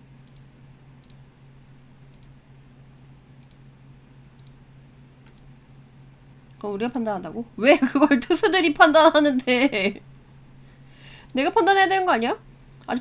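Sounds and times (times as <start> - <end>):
low electrical hum: 0.0 - 13.0
computer mouse clicking: 0.2 - 1.2, 2.1 - 2.4, 3.4 - 3.6, 4.4 - 4.6, 5.2 - 5.5.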